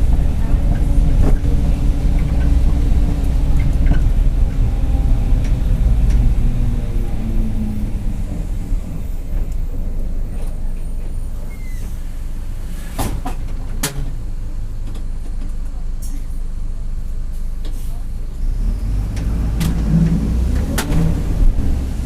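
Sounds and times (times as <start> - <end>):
bus diesel engine pulling: 0.0 - 15.0, 17.2 - 22.0.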